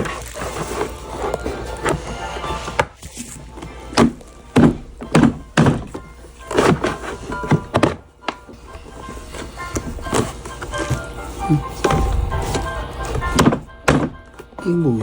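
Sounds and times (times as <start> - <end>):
music playing: 0.0 - 15.0
irregular thuds and knocks: 3.9 - 14.6.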